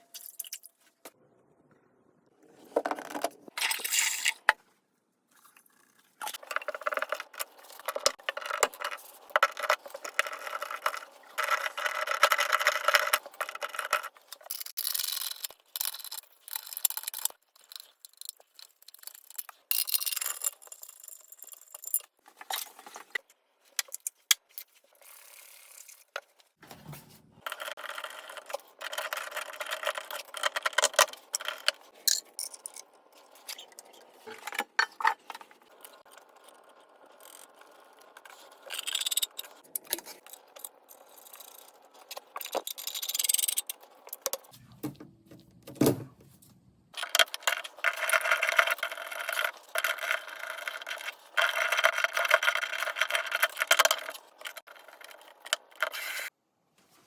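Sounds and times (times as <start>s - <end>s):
tools scraping and rubbing: 46.2s - 56.3s.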